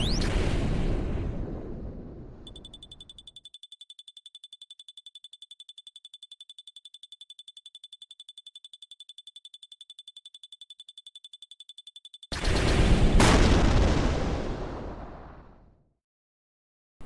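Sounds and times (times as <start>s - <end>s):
rapid high-pitched alarm beeps: 2.5s - 12.5s.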